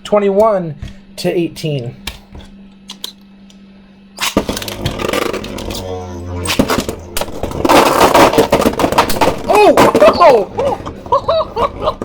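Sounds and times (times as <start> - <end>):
spinning tops whirring and scraping: 4.2 - 9.5.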